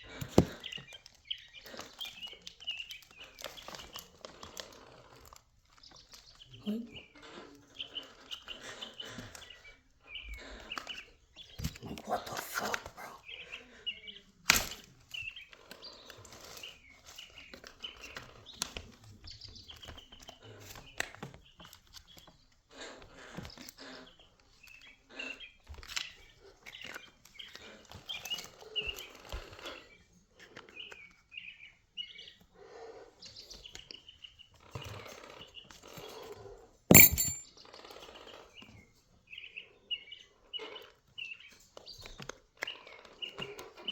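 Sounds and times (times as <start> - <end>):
hand tools clicking and knocking: 36.9 - 37.4.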